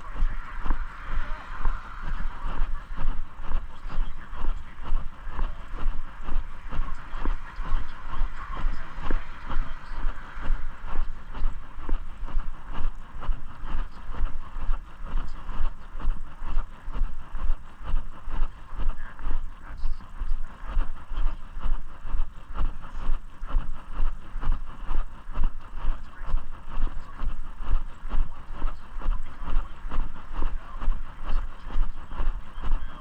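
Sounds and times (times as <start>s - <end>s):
steady outdoor hiss: 0.0s - 33.0s.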